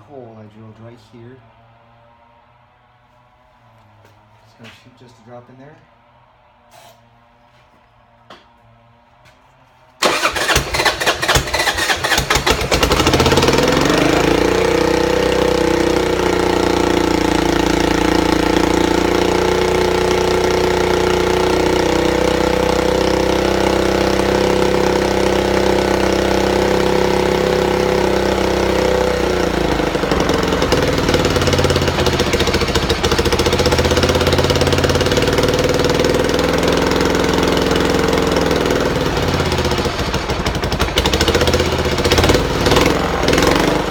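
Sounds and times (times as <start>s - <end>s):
motorcycle engine starting and idling: 10.0s - 43.9s.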